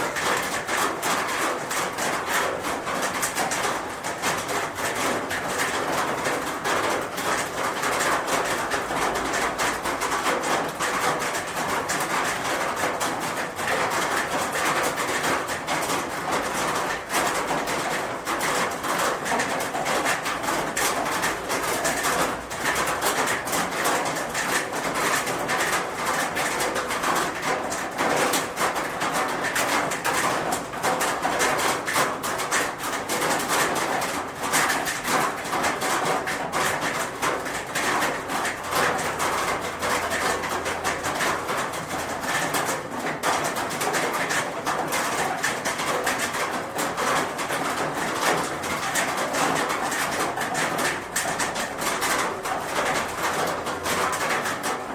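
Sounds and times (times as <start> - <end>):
rain on a roof: 0.0 - 54.9.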